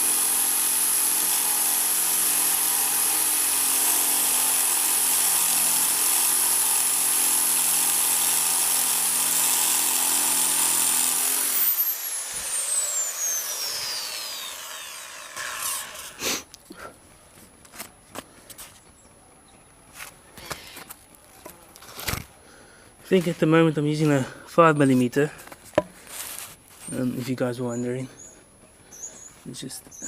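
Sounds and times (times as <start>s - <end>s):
electric drill running: 0.0s - 16.2s.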